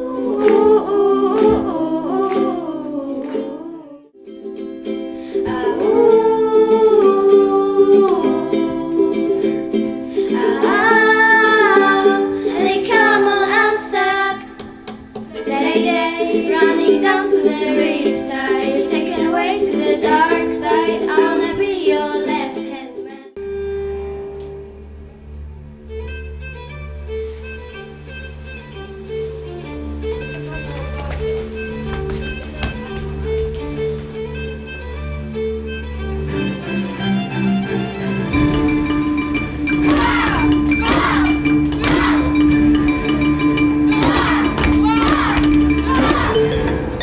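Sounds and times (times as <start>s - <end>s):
person singing long wavering notes: 0.0s - 4.4s, 5.3s - 14.5s
plucked strings: 0.0s - 47.0s
low sustained notes: 23.4s - 47.0s.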